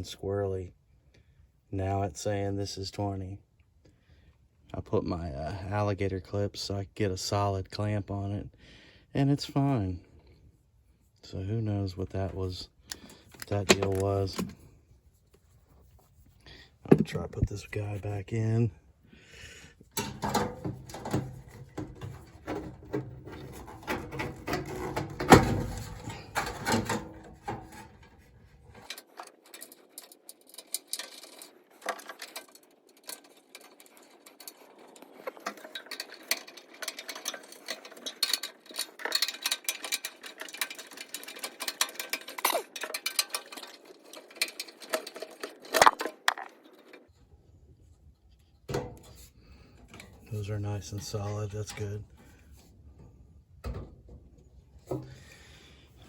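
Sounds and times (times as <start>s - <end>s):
metal clicks and rattles: 12.9s - 14.6s, 19.8s - 47.1s.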